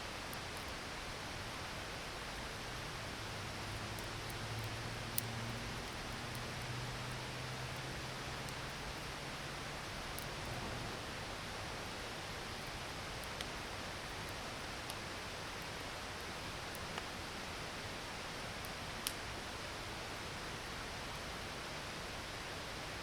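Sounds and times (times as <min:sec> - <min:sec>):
campfire crackling and popping: 0:03.4 - 0:17.2, 0:18.5 - 0:19.6.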